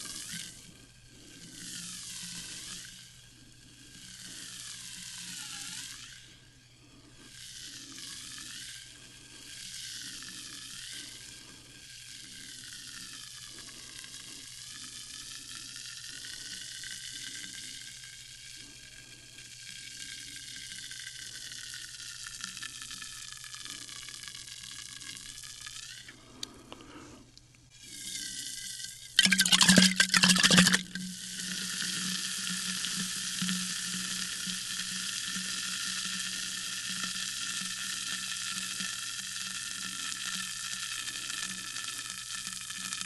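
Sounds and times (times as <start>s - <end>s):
sparkling water fizzing: 29.2s - 31.0s.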